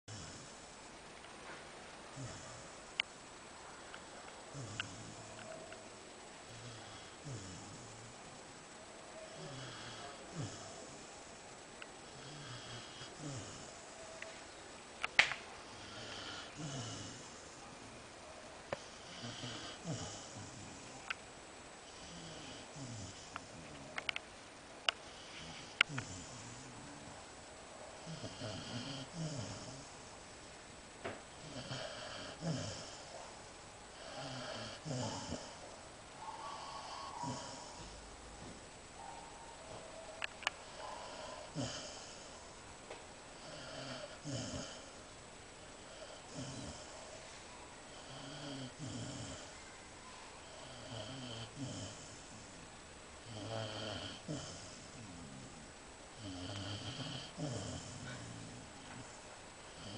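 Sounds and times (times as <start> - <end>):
dog snoring: 0.1 - 0.6, 2.1 - 2.8, 4.5 - 5.6, 6.5 - 8.2, 9.2 - 11.1, 12.0 - 14.0, 15.7 - 17.7, 18.8 - 21.0, 21.8 - 24.0, 25.0 - 27.0, 28.0 - 30.2, 31.3 - 33.3, 33.9 - 35.7, 36.3 - 38.0, 40.6 - 42.4, 43.4 - 45.0, 45.8 - 47.1, 47.9 - 49.6, 50.4 - 52.6, 53.2 - 59.9.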